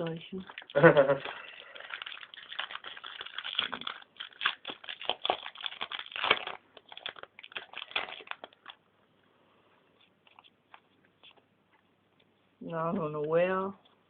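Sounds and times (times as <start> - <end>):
foil wrapper crinkling: 0.0 - 8.8.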